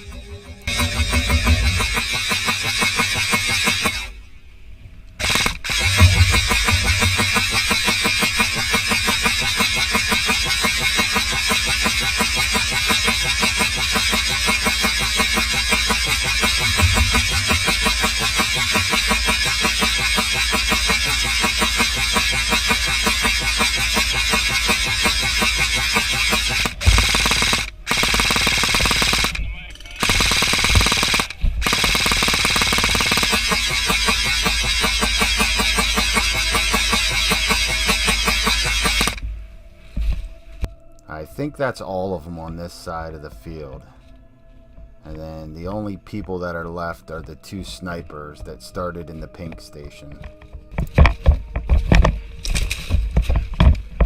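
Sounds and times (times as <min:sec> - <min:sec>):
evenly spaced clicking: 0:00.0 - 0:04.1, 0:05.2 - 0:29.4, 0:30.0 - 0:39.2
airsoft gun firing full auto: 0:00.7 - 0:04.1, 0:05.2 - 0:29.4, 0:30.0 - 0:39.2.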